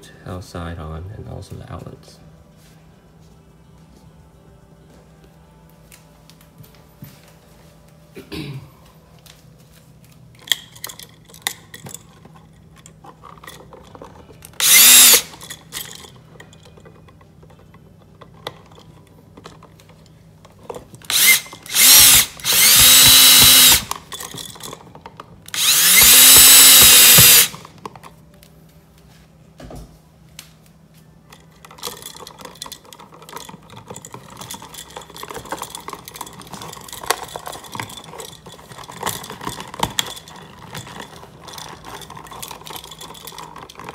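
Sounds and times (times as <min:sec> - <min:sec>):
faint clicks and handling noise: 0:08.8 - 0:14.7, 0:27.6 - 0:43.9
electric drill spinning: 0:14.6 - 0:15.4, 0:21.0 - 0:24.1, 0:25.5 - 0:27.7.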